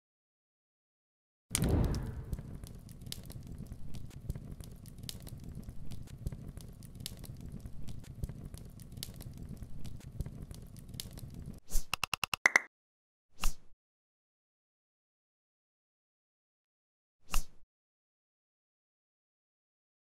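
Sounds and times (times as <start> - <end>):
crackling pops and snaps: 1.5 - 12.7
steady low rumble: 1.6 - 11.6.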